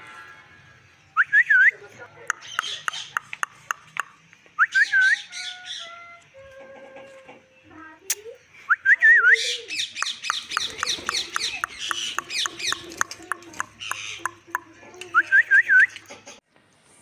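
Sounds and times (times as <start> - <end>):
parrot squawking chatter: 2.3 - 4.1, 4.7 - 7.5, 9.4 - 15.2.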